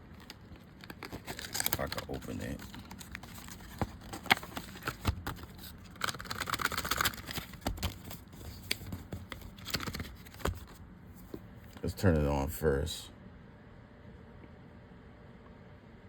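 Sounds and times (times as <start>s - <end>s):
paper or plastic rustling: 0.0s - 11.9s
cardboard and plastic clicks: 0.1s - 10.8s.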